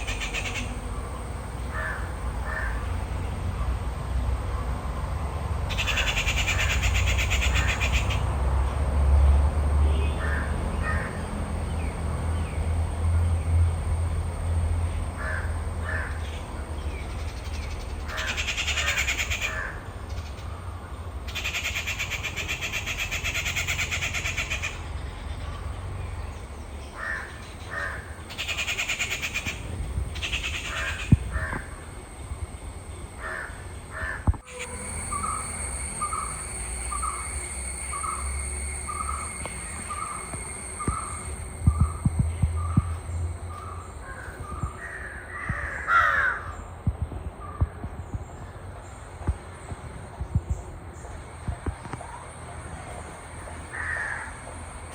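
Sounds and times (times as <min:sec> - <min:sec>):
crows cawing: 0:00.0 - 0:01.0, 0:01.6 - 0:03.0, 0:05.7 - 0:08.2, 0:10.2 - 0:11.2, 0:15.2 - 0:16.3, 0:18.1 - 0:19.9, 0:27.0 - 0:29.6, 0:30.2 - 0:31.7, 0:33.2 - 0:35.4, 0:43.5 - 0:46.6, 0:53.7 - 0:54.4
high buzzing: 0:28.0 - 0:44.4.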